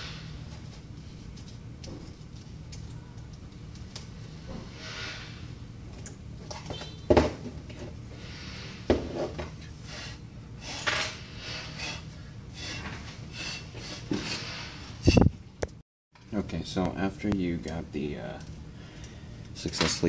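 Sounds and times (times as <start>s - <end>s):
scraping and rubbing: 9.0s - 15.3s.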